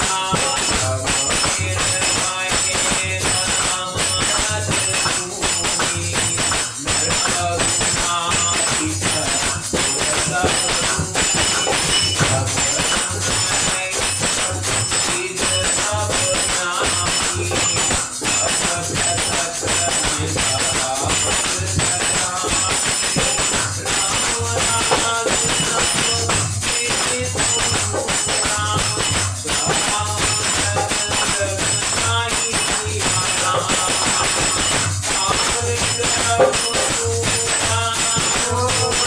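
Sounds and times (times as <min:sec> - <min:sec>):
jingling percussion: 0:00.0 - 0:39.0
low drum beat: 0:04.1 - 0:16.4.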